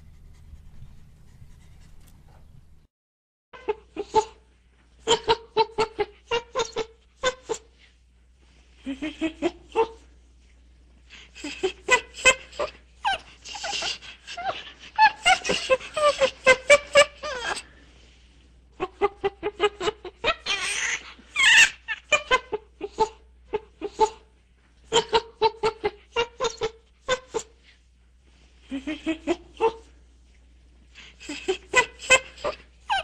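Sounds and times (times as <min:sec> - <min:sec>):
chimpanzee panting calls: 0:00.0 - 0:02.7, 0:11.2 - 0:17.8, 0:30.9 - 0:33.0
chimpanzee screaming: 0:20.3 - 0:21.8.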